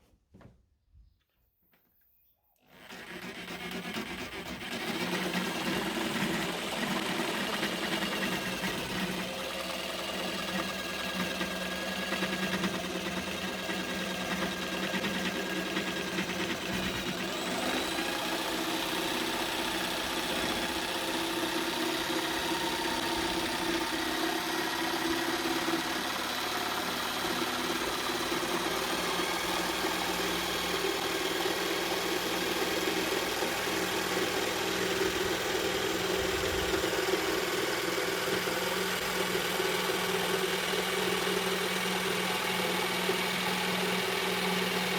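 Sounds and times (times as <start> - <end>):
electric jigsaw cutting wood: 2.6 - 44.9.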